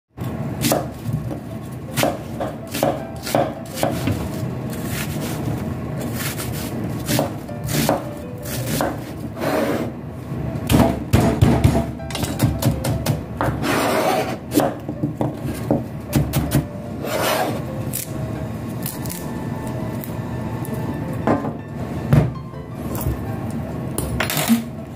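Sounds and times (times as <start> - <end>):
knife chopping on cutting board: 2.0 - 5.4, 6.0 - 9.7, 10.7 - 17.6.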